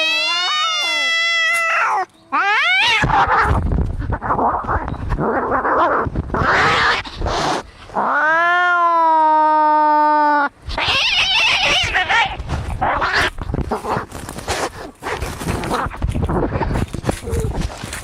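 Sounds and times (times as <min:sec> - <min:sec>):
cats yowling: 0:00.0 - 0:07.4, 0:08.0 - 0:13.4
cats hissing and spitting: 0:02.7 - 0:08.2, 0:10.7 - 0:18.0.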